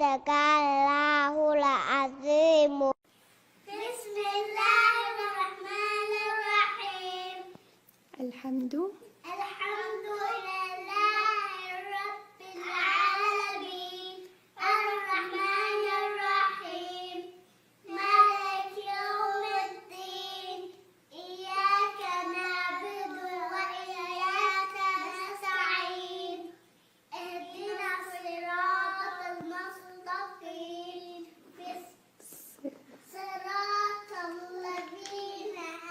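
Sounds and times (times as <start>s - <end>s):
child chanting melodically: 17.9s - 26.5s.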